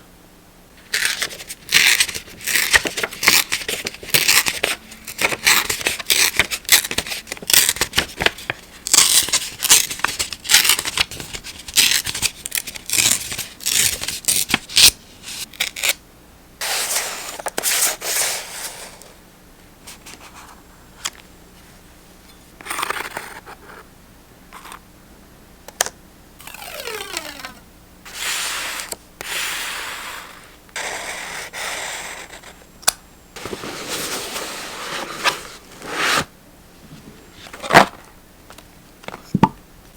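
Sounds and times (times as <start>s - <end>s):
paper crinkling and snipping: 0.9s - 16.0s
paper rubbing and tearing: 26.4s - 32.2s, 33.4s - 36.3s.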